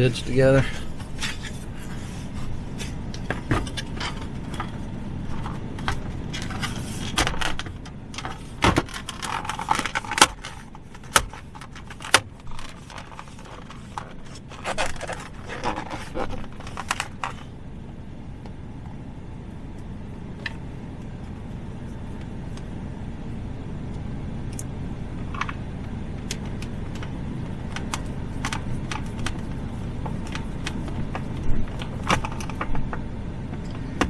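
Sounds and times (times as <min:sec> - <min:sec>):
plastic parts clicking and rattling: 0:03.1 - 0:17.5, 0:26.2 - 0:32.9.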